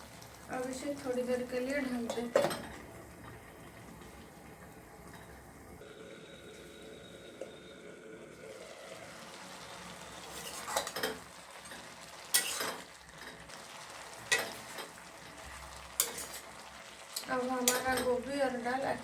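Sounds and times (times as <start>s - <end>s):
metal spoon scraping a pot: 10.2s - 11.2s, 12.3s - 13.4s, 16.0s - 16.5s.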